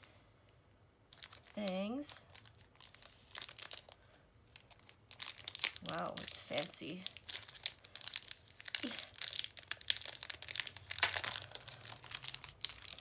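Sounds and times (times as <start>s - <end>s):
paper and packaging crinkling: 1.1s - 13.0s.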